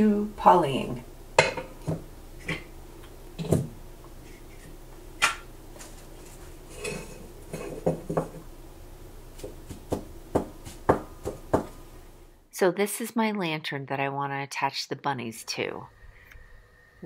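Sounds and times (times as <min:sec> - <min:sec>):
small objects knocking on workbench: 0:07.5 - 0:08.4.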